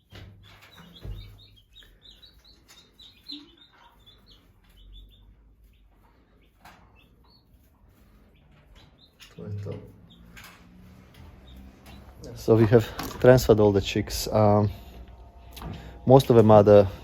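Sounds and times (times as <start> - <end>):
chicks peeping: 0.0 - 17.0.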